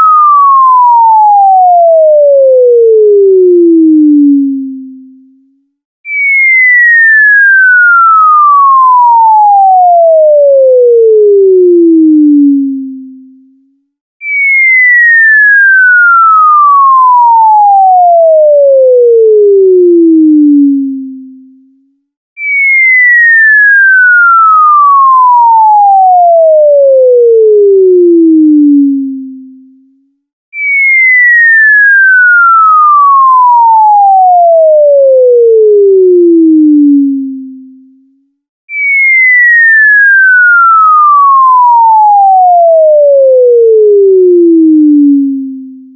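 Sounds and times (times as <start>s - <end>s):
cartoon falling whistle: 6.0s - 9.5s, 14.2s - 17.9s, 22.4s - 25.9s, 30.5s - 34.3s, 38.7s - 42.7s.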